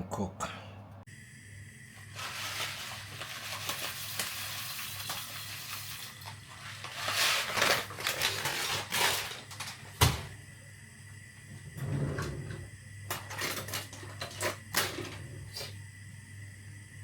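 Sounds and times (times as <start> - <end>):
chicken sizzling in a pan: 1.6 - 9.5.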